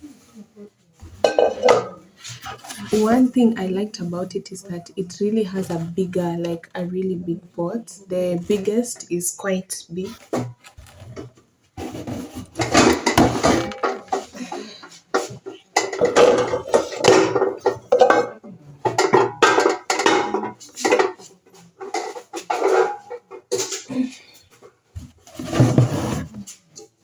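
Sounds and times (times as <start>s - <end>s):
metal pots clanking and scraping: 1.0s - 4.1s, 10.2s - 23.9s, 25.2s - 26.6s.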